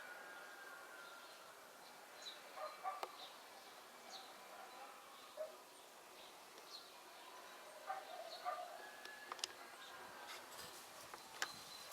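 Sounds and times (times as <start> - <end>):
faint bird chirps: 6.1 - 11.9.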